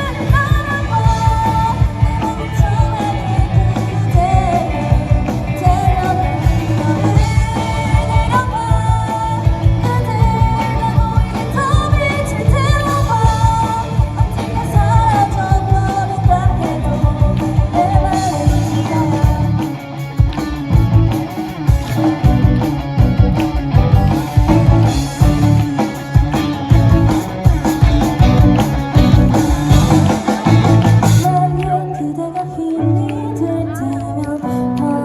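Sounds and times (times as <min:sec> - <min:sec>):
person singing: 0:00.0 - 0:19.8, 0:29.0 - 0:35.0
rock band playing: 0:00.0 - 0:35.0.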